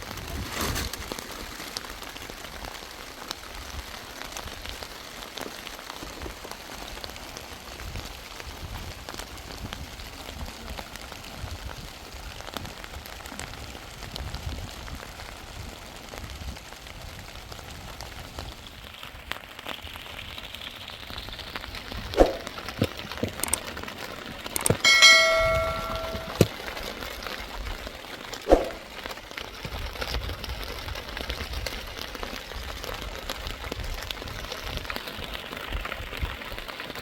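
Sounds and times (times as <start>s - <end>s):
short metallic ring: 24.6s - 26.5s, 28.5s - 28.9s.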